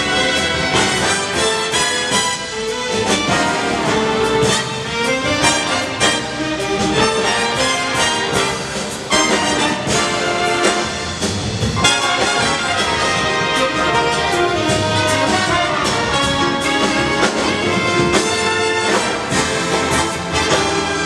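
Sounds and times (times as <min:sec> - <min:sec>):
big band playing: 0:00.0 - 0:21.0
drum kit: 0:00.0 - 0:21.0
trumpets and trombones: 0:00.0 - 0:21.0.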